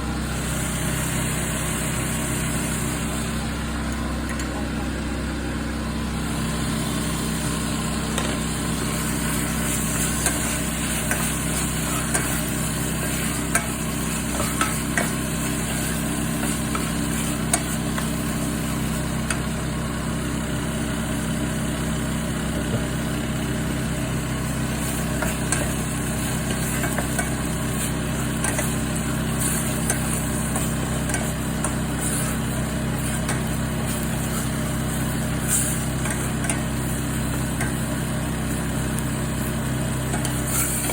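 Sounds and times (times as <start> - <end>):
steady low hum: 1.8 - 40.9
meat sizzling in a frying pan: 6.8 - 40.9
utensil clicking against pan: 26.4 - 28.8, 29.4 - 31.8, 35.5 - 36.7.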